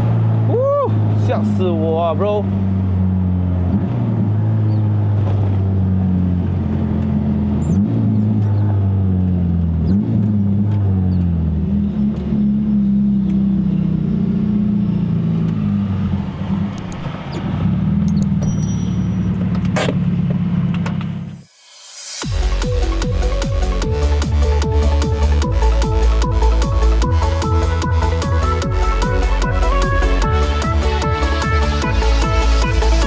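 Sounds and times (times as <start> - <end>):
car engine idling through exhaust: 10.6 - 21.4.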